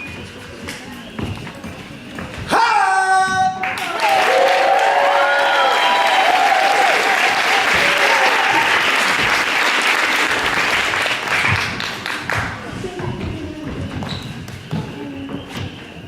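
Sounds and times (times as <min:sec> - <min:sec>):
audience applauding: 0:03.6 - 0:12.5.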